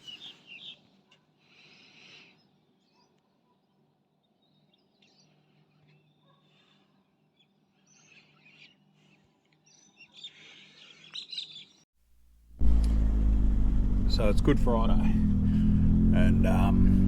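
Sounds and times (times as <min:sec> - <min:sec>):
birds chirping: 0:00.0 - 0:06.3, 0:07.0 - 0:11.8
faint low hum: 0:12.3 - 0:17.0.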